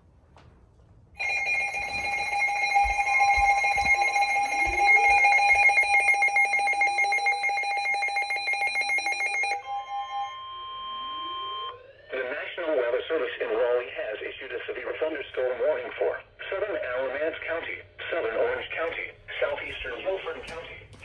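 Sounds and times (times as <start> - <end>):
electronic emergency alert tones: 1.2 - 13.0.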